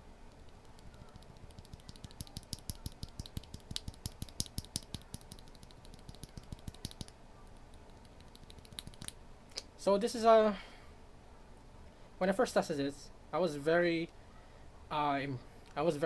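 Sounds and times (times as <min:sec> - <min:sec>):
keyboard keys clacking: 0:00.3 - 0:09.1.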